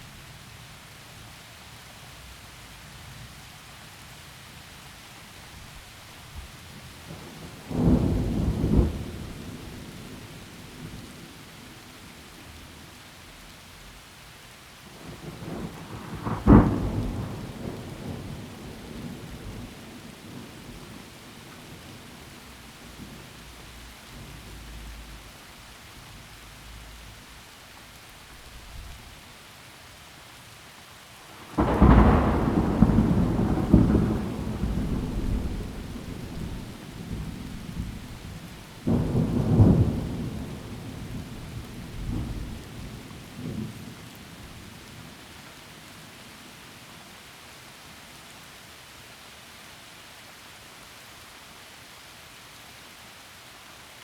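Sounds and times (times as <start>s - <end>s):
steady rain: 0.0s - 54.0s
thunder: 7.2s - 11.0s, 15.0s - 19.8s, 31.6s - 43.9s.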